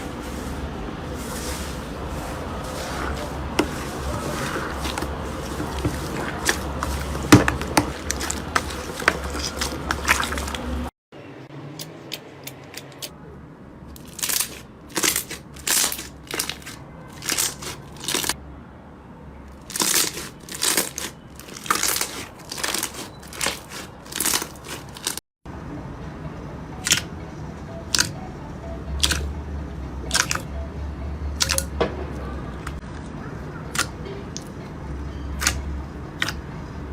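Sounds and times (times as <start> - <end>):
slime crackling and popping: 14.0 - 18.4, 19.6 - 25.2, 27.9 - 28.1, 29.0 - 29.3, 30.1 - 30.5, 35.4 - 35.6.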